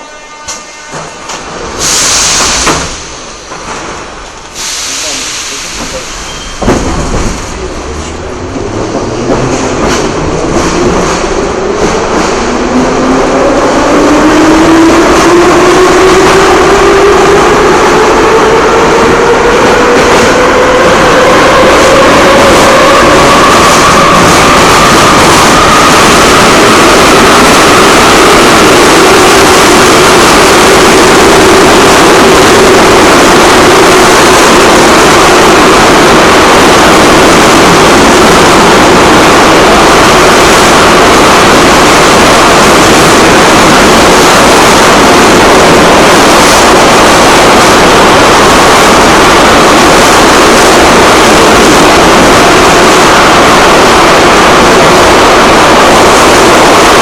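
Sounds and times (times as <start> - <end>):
metro train rumbling in tunnel: 0.0 - 57.0.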